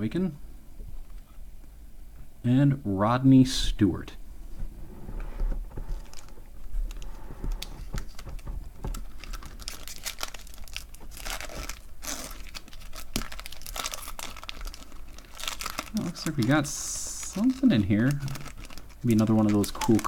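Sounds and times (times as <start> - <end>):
plastic rustling: 5.4 - 20.0
wrapper tearing and crinkling: 6.0 - 20.0.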